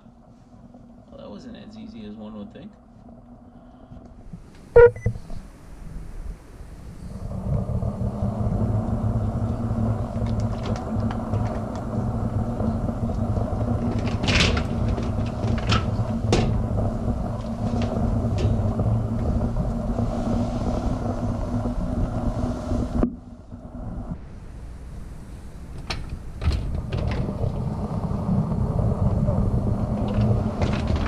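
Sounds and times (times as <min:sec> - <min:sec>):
dishwasher humming: 0:07.4 - 0:22.8.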